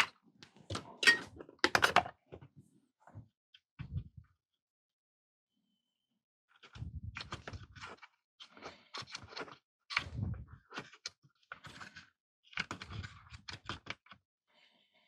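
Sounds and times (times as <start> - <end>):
small clicks and rustles: 6.5 - 14.2.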